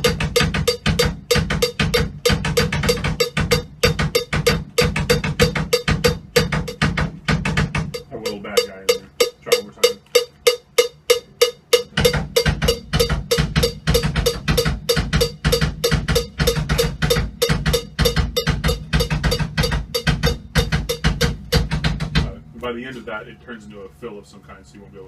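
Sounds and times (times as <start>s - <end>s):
metronome click track ticking: 0.0s - 21.9s
rock drum kit playing: 0.0s - 22.5s.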